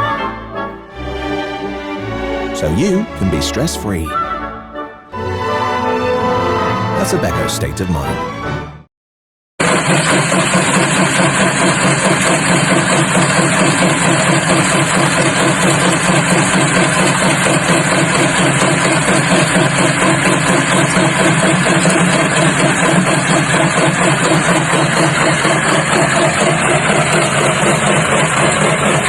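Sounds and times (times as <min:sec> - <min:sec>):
loud mechanical rumble: 0:09.6 - 0:29.0.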